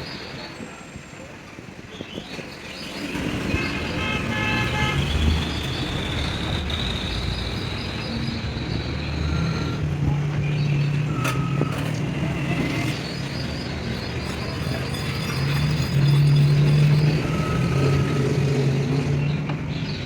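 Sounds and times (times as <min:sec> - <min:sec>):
engines running: 0:02.7 - 0:20.0.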